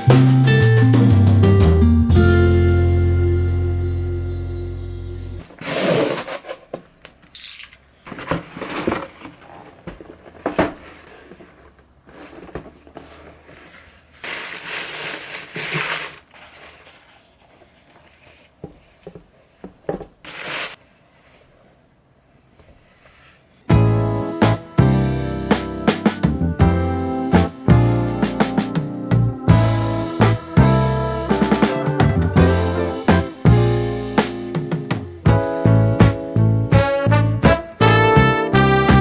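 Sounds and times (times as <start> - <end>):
packaging crinkling and tearing: 13.6 - 17.4, 20.3 - 20.8.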